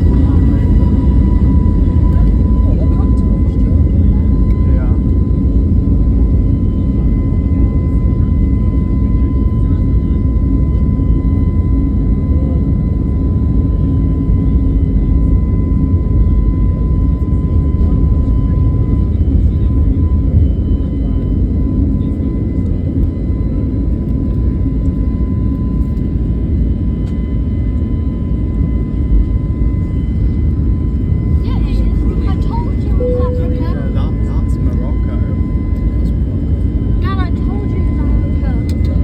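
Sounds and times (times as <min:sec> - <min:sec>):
aeroplane engines rumbling: 0:00.0 - 0:39.0
thin high tone: 0:33.0 - 0:34.6.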